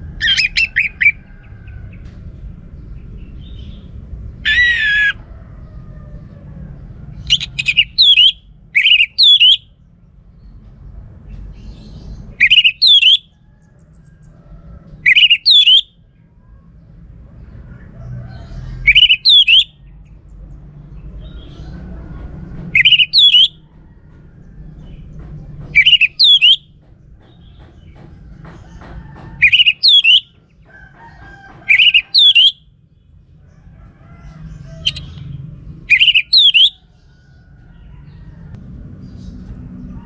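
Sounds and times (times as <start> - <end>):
low steady background rumble: 0.0 - 40.0
songbird two-part call: 7.3 - 9.6, 12.4 - 13.2, 15.1 - 15.9, 18.9 - 19.7, 22.8 - 23.5, 25.8 - 26.6, 29.4 - 30.2, 31.7 - 32.6, 35.9 - 36.7.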